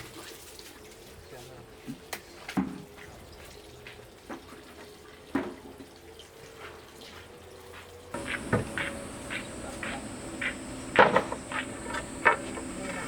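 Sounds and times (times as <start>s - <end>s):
faint steady hum: 8.2s - 13.0s
water dripping and splashing: 8.2s - 13.0s.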